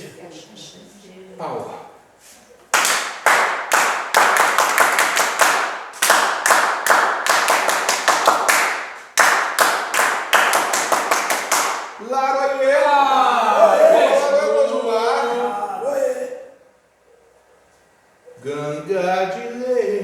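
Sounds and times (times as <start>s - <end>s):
rhythmic hand clapping: 2.7s - 12.0s.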